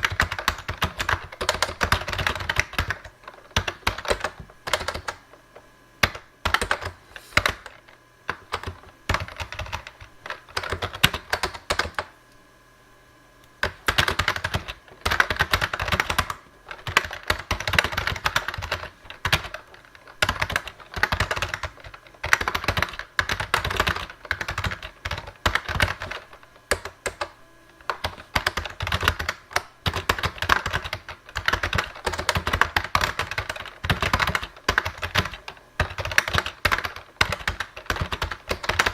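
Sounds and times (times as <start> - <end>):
fast keyboard typing: 0.0 - 5.3, 6.0 - 12.1, 13.6 - 38.9.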